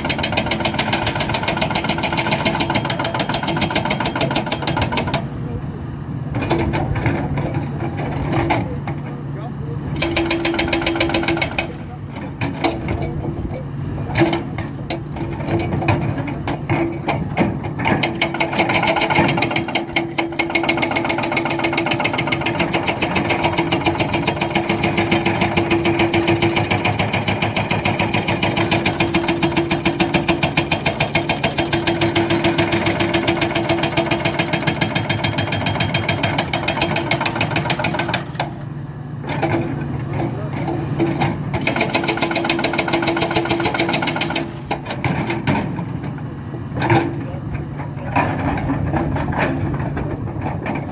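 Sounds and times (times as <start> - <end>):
hydraulic breaker hammering: 0.0 - 5.4, 9.9 - 13.1, 14.1 - 38.6, 39.2 - 46.1
excavator engine running: 0.0 - 50.9.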